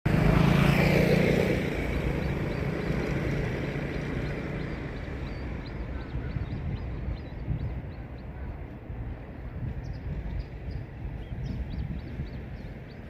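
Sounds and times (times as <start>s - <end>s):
vehicle engine passing: 0.1s - 7.0s.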